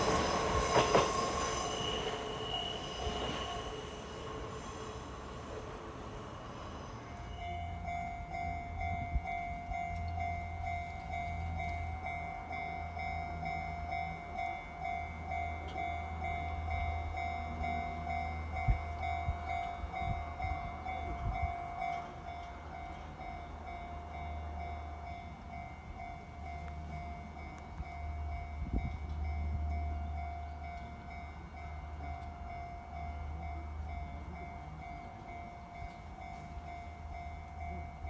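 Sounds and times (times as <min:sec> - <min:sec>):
train wheels clicking: 0:00.0 - 0:06.4
train rumbling past: 0:00.0 - 0:38.0.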